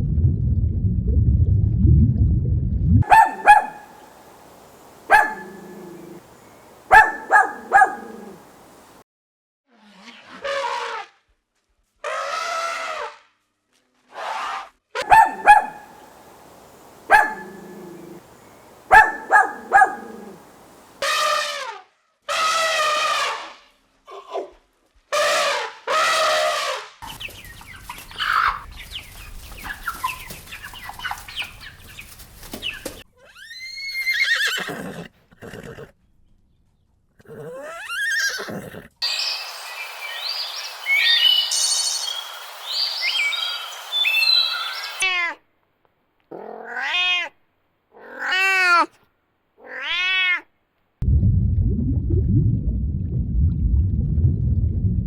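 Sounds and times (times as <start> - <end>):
high chirping: 3.0 - 8.9, 15.1 - 21.0
animal calls: 3.0 - 9.0, 15.0 - 21.5.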